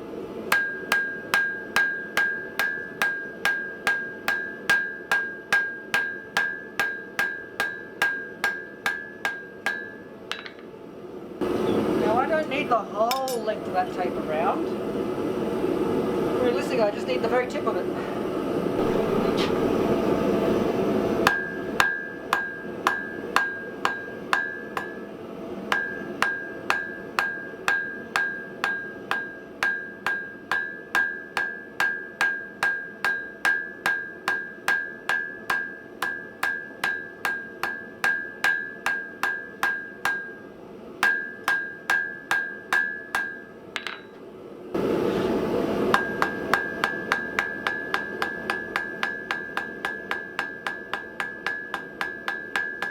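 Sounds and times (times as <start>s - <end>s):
hammer striking steel on anvil: 0.5s - 10.8s, 13.1s - 13.6s, 18.8s - 20.0s, 21.2s - 25.1s, 25.7s - 44.2s, 45.8s - 52.9s.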